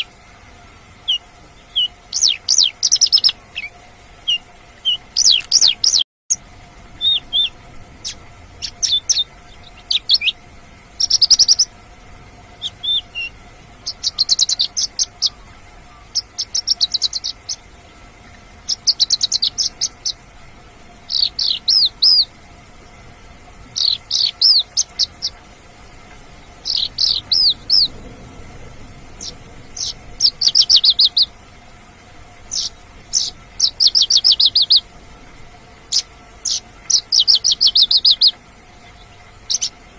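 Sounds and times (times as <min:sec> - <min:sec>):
lark singing trills: 0:01.0 - 0:06.4, 0:07.0 - 0:10.4, 0:11.0 - 0:11.7, 0:12.6 - 0:17.8, 0:18.6 - 0:20.2, 0:21.0 - 0:22.3, 0:23.7 - 0:25.4, 0:26.2 - 0:28.0, 0:29.1 - 0:31.4, 0:32.4 - 0:34.9, 0:35.9 - 0:39.9.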